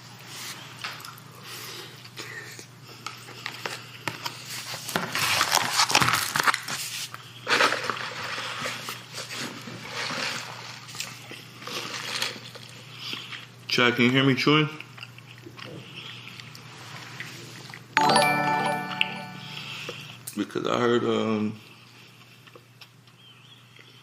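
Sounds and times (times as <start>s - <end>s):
wet chewing and lip-smacking: 14.7s - 18.0s, 22.2s - 24.0s.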